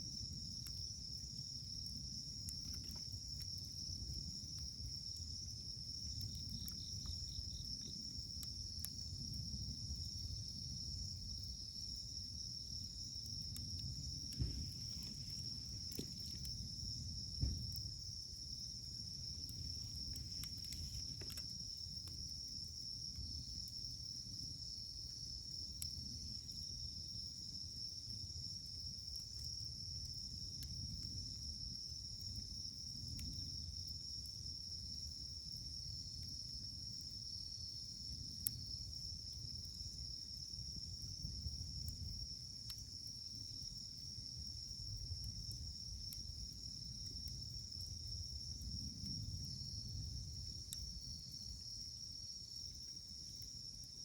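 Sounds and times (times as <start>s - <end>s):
campfire crackling: 0.0s - 54.0s
sharp pops from fire: 12.8s - 22.4s.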